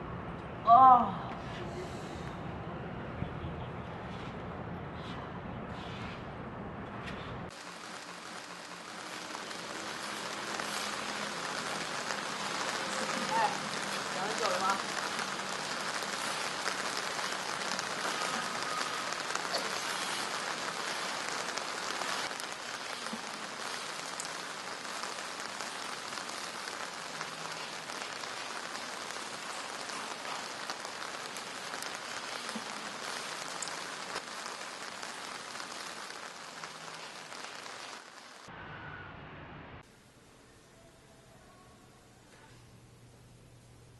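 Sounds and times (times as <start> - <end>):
steady rain hiss: 7.5 - 38.5.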